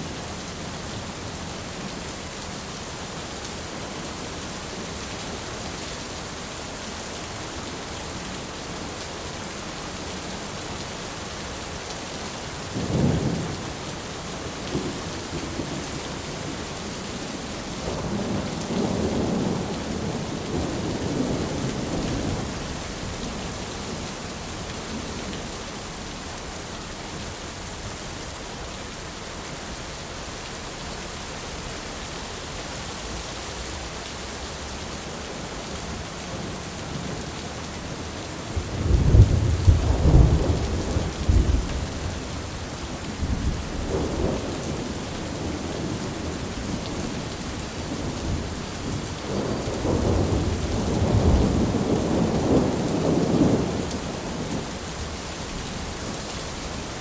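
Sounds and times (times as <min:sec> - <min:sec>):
heavy rain: 0:00.0 - 0:57.0
rolling thunder: 0:38.6 - 0:42.4, 0:48.0 - 0:54.6.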